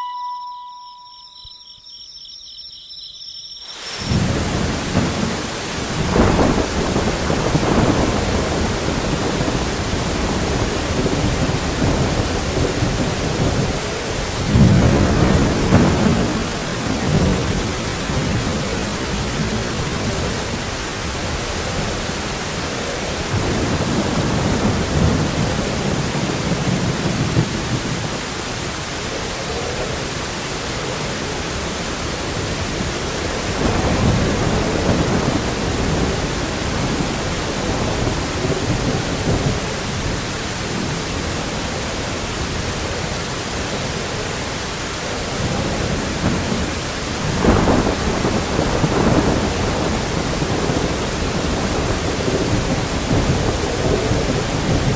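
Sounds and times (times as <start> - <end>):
heavy rain: 3.6 - 54.9
rolling thunder: 3.9 - 28.2, 32.3 - 41.3, 45.3 - 54.9
sharp thunderclap: 4.0 - 21.9, 32.7 - 40.2, 45.4 - 54.9.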